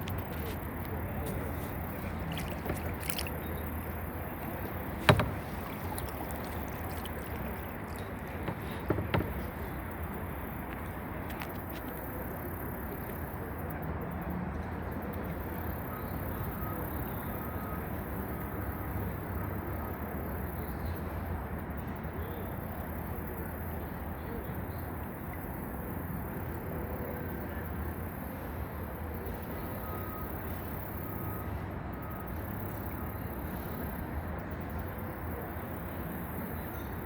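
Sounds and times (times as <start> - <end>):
sharp knocks: 4.4 - 9.7.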